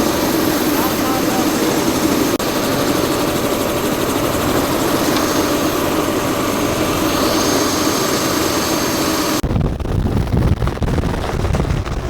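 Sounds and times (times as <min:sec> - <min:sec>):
high-pitched whine: 0:00.0 - 0:09.4
helicopter engine and rotor: 0:00.0 - 0:12.0.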